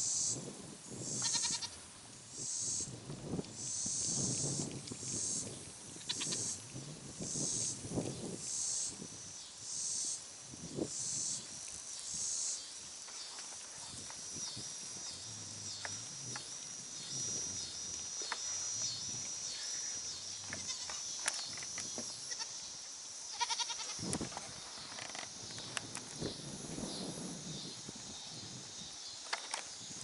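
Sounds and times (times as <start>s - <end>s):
goats bleating: 23.3s - 23.9s.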